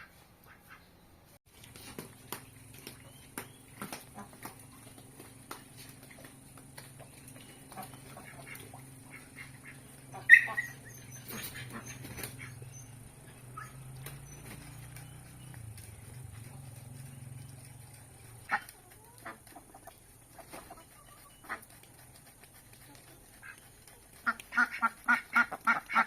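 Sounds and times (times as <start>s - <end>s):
low steady hum: 1.0s - 26.0s
animal high-pitched cry: 10.2s - 12.6s.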